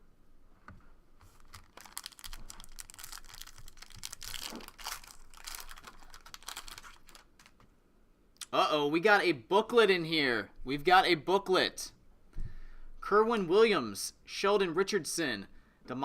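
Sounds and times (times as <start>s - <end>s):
plastic packaging crinkling: 1.2s - 7.7s.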